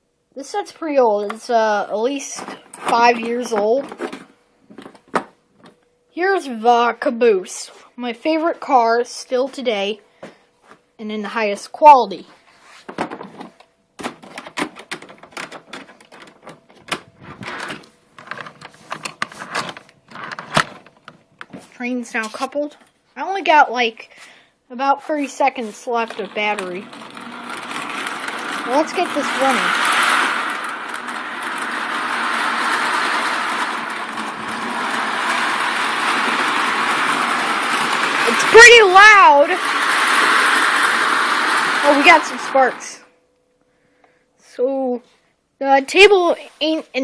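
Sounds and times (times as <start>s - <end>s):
toy train cars clattering: 1.2s - 5.8s, 13.0s - 22.7s, 25.1s - 43.1s.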